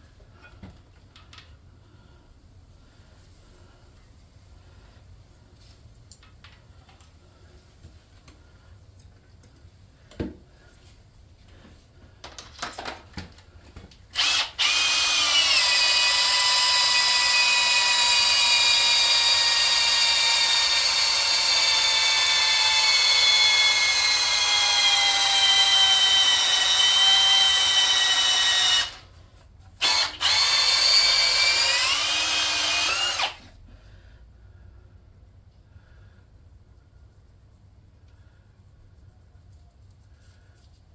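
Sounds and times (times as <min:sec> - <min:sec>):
electric drill cutting metal: 0:14.2 - 0:29.1, 0:29.8 - 0:33.5.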